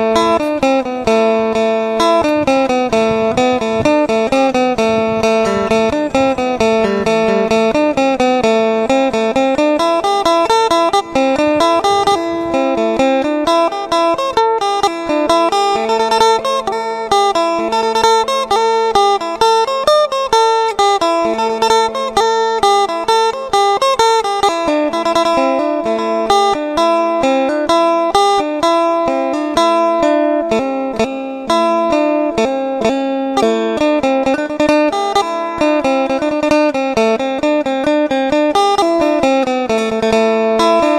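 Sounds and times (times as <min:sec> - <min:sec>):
held drone note: 0:00.0 - 0:18.1
plucked lute melody: 0:00.0 - 0:40.9.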